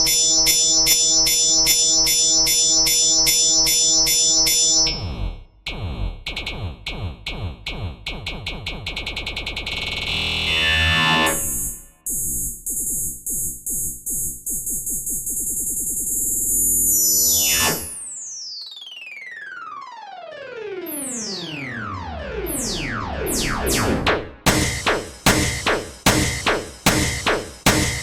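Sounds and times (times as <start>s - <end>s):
dense synthesizer music: 19.8s - 28.0s.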